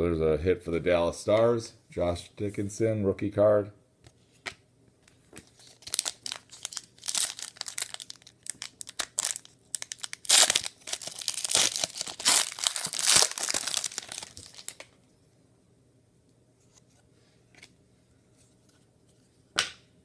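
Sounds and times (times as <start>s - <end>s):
foil wrapper crinkling and tearing: 5.5s - 14.9s.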